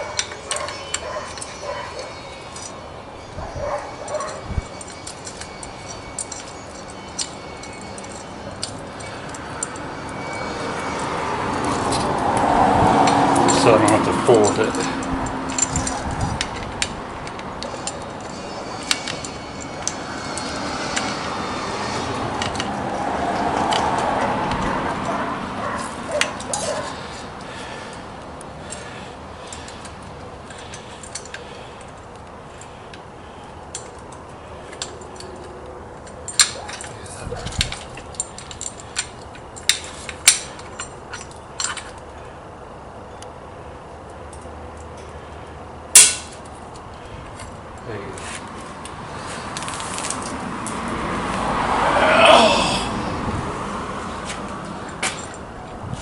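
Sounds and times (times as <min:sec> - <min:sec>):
metal parts and tools clinking: 0:00.0 - 0:42.3, 0:45.9 - 0:50.8, 0:54.2 - 0:56.0
rush of noise: 0:50.9 - 0:56.0.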